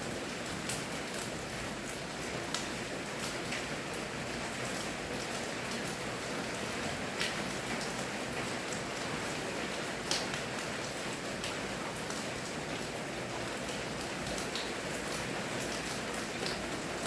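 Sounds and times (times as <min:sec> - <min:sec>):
raindrops hitting close by: 0:00.0 - 0:17.0.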